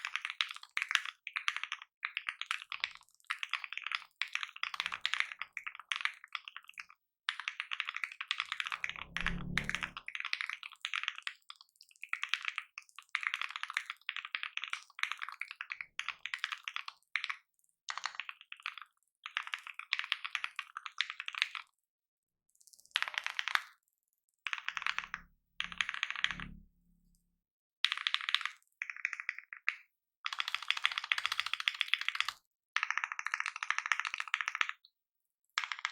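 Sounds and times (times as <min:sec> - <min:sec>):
fast mechanical keyboard typing: 0:28.0 - 0:34.8, 0:35.6 - 0:35.9.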